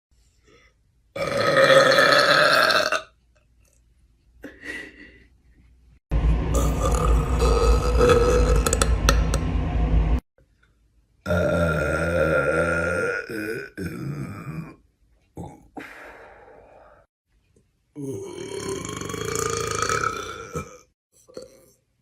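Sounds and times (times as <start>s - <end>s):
woman burping: 1.2s - 3.1s.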